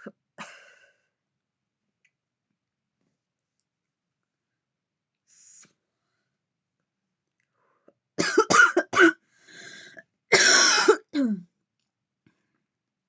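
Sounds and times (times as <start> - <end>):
woman coughing harshly: 8.2 - 9.2, 10.3 - 11.4
short breath: 9.2 - 10.0.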